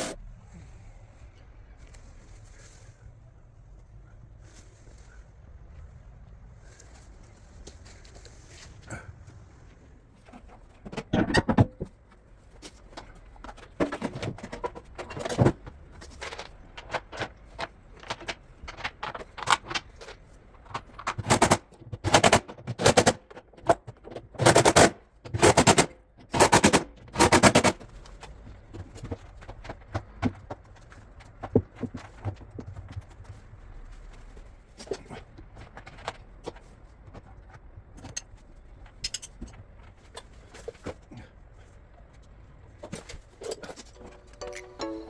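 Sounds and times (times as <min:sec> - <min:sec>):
clatter of parts: 0:10.2 - 0:44.4
impact driver rattling: 0:20.8 - 0:27.8.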